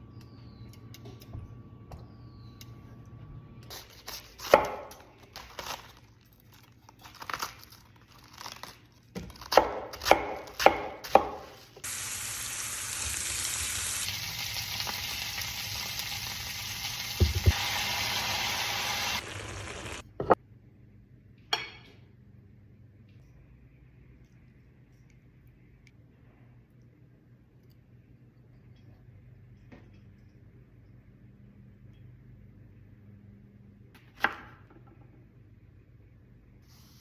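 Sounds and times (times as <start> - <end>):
knife chopping on cutting board: 9.2 - 11.6
food sizzling in hot pan: 11.8 - 20.0.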